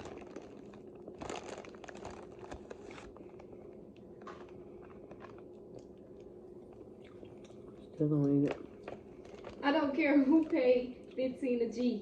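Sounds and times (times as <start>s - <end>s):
biting and chewing: 0.0s - 9.7s.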